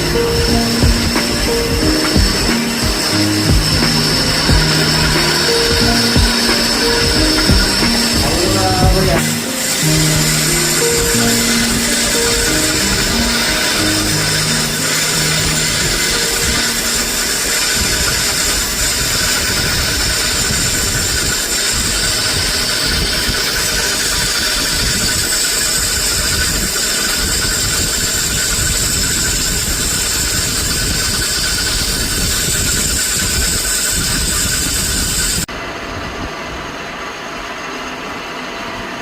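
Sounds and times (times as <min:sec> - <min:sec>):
machinery hum and hiss: 0:00.0 - 0:39.0.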